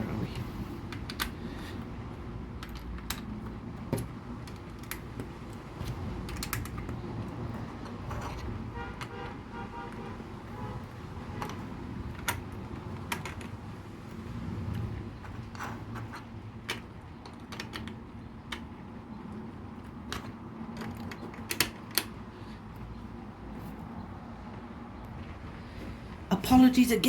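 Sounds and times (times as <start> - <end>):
low background hum: 0.0 - 27.0
plastic bricks clicking: 2.6 - 9.1, 11.4 - 13.6, 14.7 - 18.8, 19.7 - 22.2.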